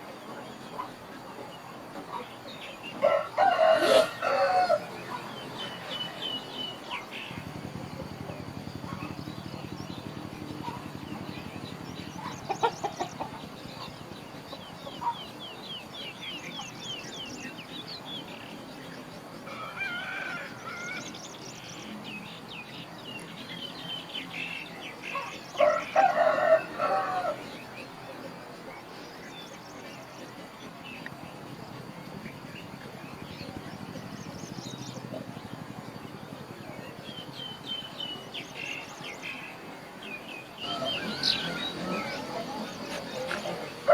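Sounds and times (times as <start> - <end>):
chickens clucking: 0.0 - 6.2, 6.8 - 15.4, 40.6 - 43.9
rooster crowing: 3.0 - 5.0, 19.5 - 21.0, 25.6 - 27.4, 40.6 - 42.7.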